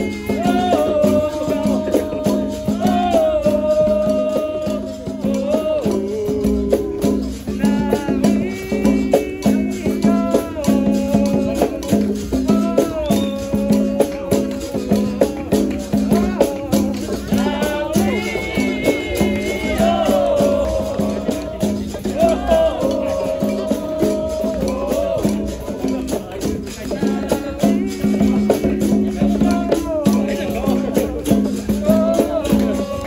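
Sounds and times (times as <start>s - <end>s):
berimbau: 0.0s - 33.0s
shaker rattle: 0.0s - 33.0s
voices singing: 0.0s - 33.0s.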